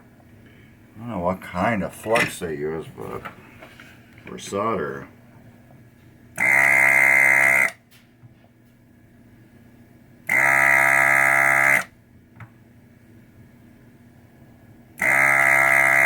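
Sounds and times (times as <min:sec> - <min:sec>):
desoldering vacuum pump buzzing: 0:06.3 - 0:07.9, 0:10.2 - 0:12.0, 0:14.9 - 0:16.0.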